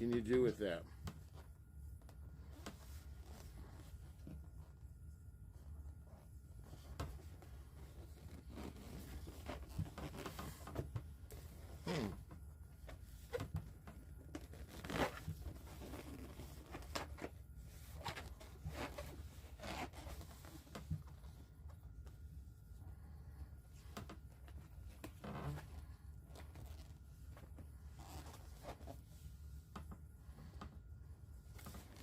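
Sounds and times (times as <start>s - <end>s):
low steady hum: 0.0s - 32.0s
balloon squeaking: 11.7s - 12.2s.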